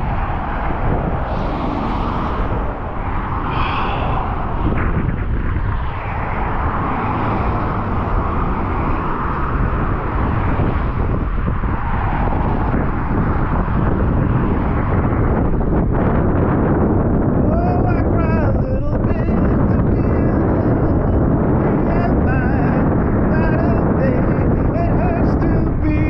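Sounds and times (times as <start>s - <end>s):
road traffic passing: 0.0s - 17.4s, 19.4s - 25.9s
wind buffeting microphone: 0.0s - 26.0s.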